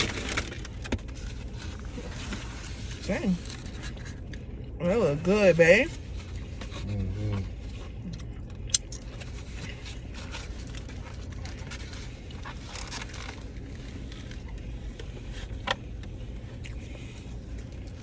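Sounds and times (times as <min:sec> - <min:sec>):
food wrapper rustling: 0:00.0 - 0:04.6, 0:07.5 - 0:16.6.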